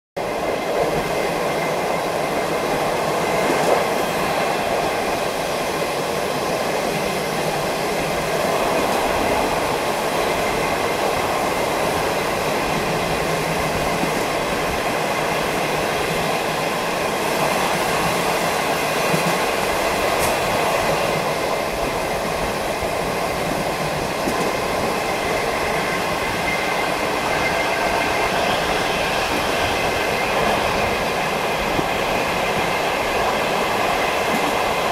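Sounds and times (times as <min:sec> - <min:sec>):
rushing wind in train coach: 0:00.2 - 0:34.9
train wheels rolling on rails: 0:00.2 - 0:34.9.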